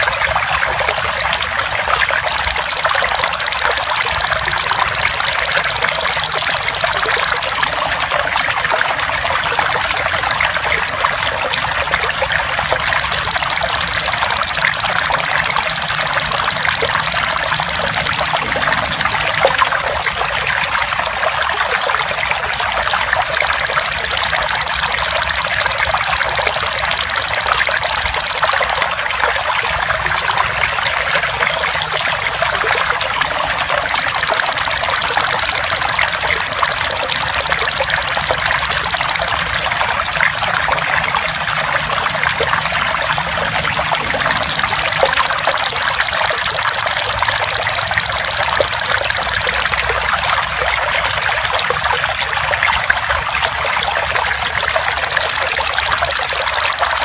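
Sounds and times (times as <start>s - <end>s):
water trickling and splashing: 0.0s - 2.4s, 6.7s - 13.1s, 18.3s - 24.1s, 28.7s - 33.9s, 39.3s - 44.4s, 49.6s - 54.9s.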